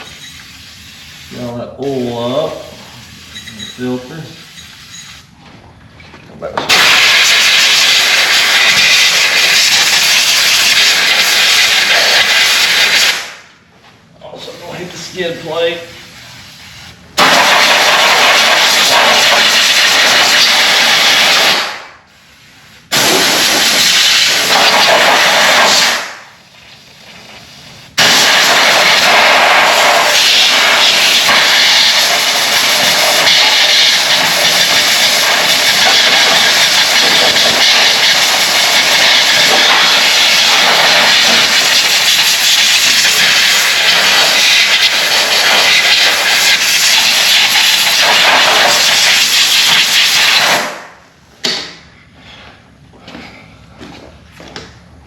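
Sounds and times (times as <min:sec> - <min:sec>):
pressurised spray hissing: 0:00.0 - 0:05.2, 0:06.7 - 0:13.3, 0:27.6 - 0:50.7.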